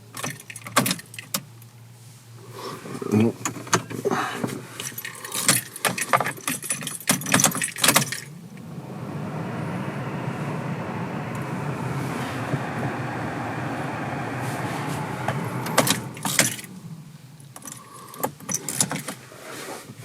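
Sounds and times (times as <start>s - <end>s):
steady low hum: 8.4s - 17.4s.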